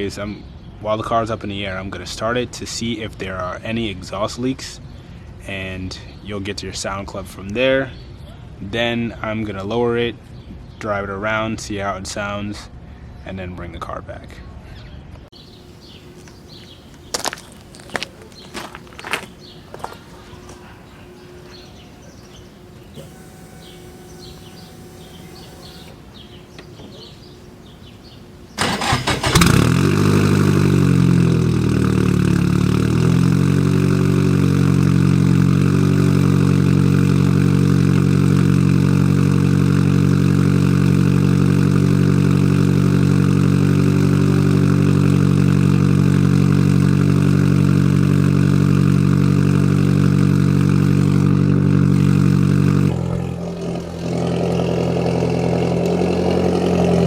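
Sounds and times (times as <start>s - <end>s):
car engine cranking and starting: 15.4s - 57.0s
loud car engine idling: 15.5s - 57.0s.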